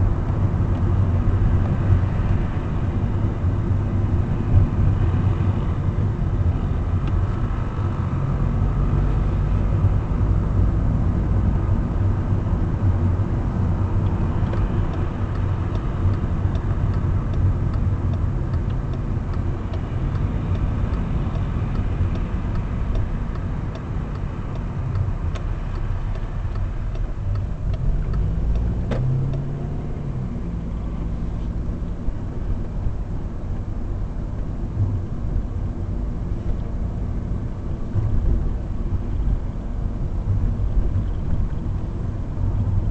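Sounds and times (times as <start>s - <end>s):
car engine and road rumble: 0.0s - 42.9s
faint regular ticking: 14.0s - 28.7s.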